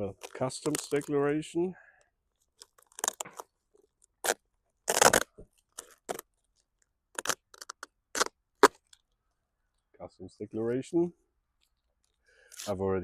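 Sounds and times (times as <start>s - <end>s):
parcel wrapping being torn open: 0.1s - 1.2s, 2.6s - 9.0s.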